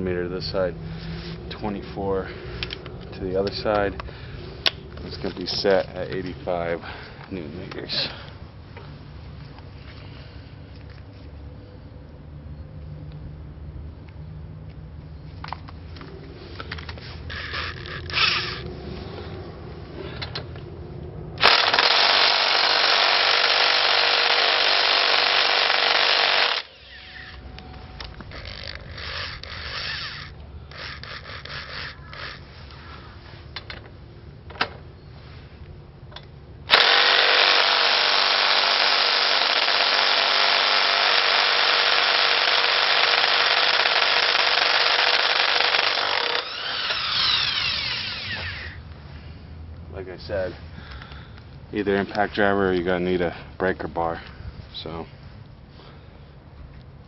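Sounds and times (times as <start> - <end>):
impact driver hammering: 36.7 - 48.7.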